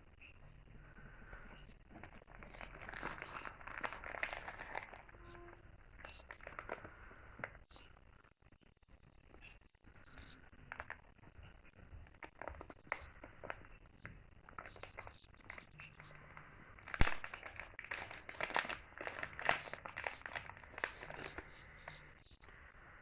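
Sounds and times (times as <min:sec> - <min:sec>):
packaging crinkling and rustling: 0:01.9 - 0:07.6, 0:10.7 - 0:11.0, 0:12.1 - 0:13.7, 0:14.4 - 0:16.2, 0:16.8 - 0:22.2
sharp snap: 0:17.0 - 0:17.3.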